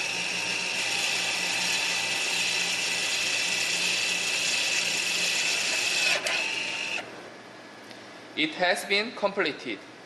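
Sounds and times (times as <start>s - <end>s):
parking brake motor whining: 4.8s - 7.3s.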